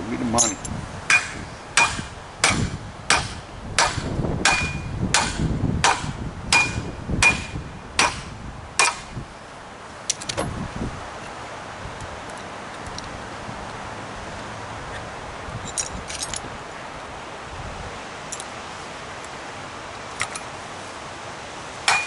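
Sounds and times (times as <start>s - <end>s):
hammer striking metal: 0.4s - 9.1s
faint steady hiss: 6.2s - 22.0s.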